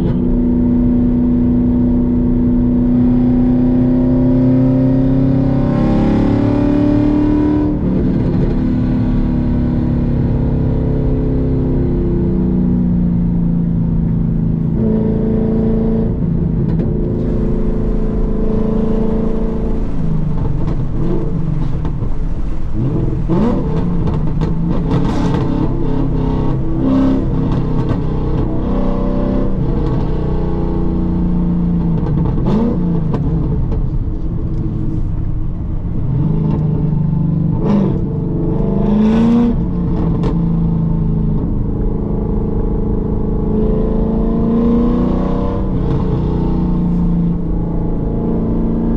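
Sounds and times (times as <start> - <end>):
car engine accelerating and shifting: 0.0 - 48.9
exhaust pops: 16.4 - 28.6.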